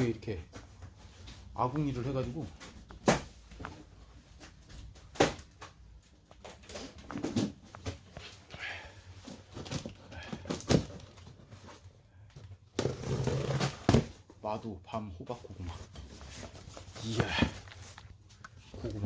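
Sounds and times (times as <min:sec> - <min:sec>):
rustling handling noises: 0:00.0 - 0:12.7, 0:13.7 - 0:19.0.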